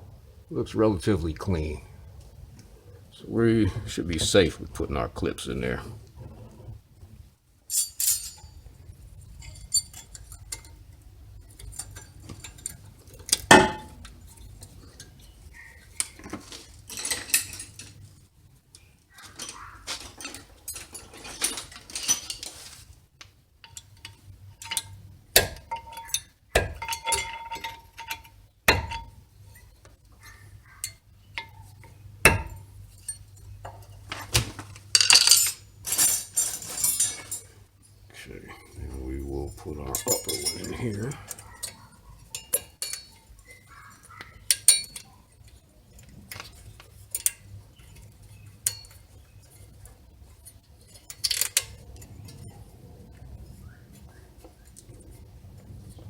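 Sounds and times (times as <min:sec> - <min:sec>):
metal ringing: 0:11.5 - 0:15.1, 0:23.6 - 0:29.2, 0:30.6 - 0:34.0, 0:38.6 - 0:45.2
metal scraping: 0:23.6 - 0:56.0.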